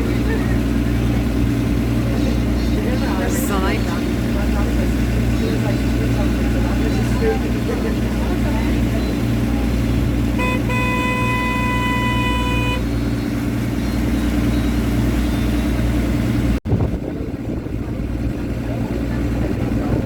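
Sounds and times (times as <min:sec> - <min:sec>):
boat engine drone: 0:00.0 - 0:20.0
boat horn: 0:10.1 - 0:13.4.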